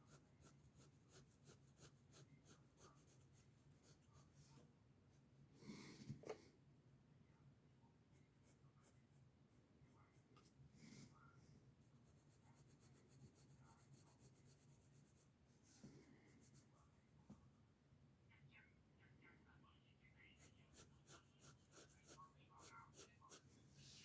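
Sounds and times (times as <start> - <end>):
pencil scratching on paper: 0.0 - 4.5, 8.1 - 11.0, 11.8 - 15.3, 20.4 - 23.4.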